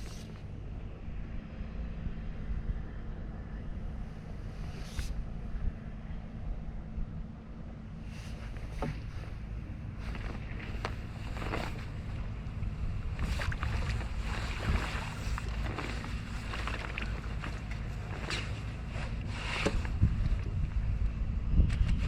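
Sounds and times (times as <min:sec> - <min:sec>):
wind buffeting microphone: 0:00.0 - 0:22.0
handling clicks and rustles: 0:08.1 - 0:20.7.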